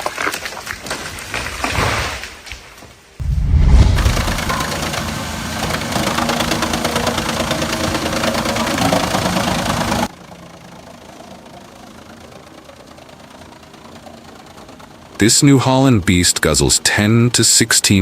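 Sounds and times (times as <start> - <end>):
quiet engine running: 3.7 - 18.0
heavy machine engine rattling: 3.8 - 16.8.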